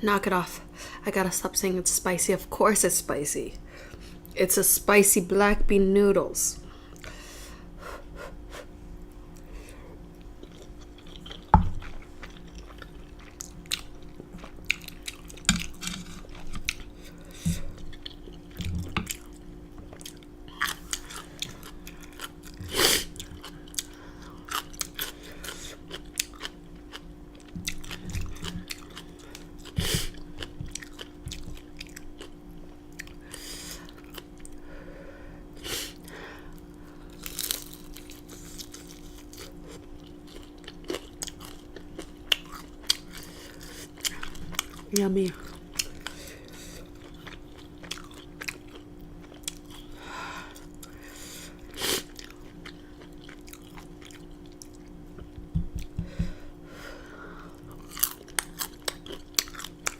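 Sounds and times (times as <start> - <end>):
person chewing and biting: 10.1 - 34.6, 37.0 - 51.0, 51.6 - 56.2, 57.5 - 59.9
short food crunches: 37.1 - 39.6.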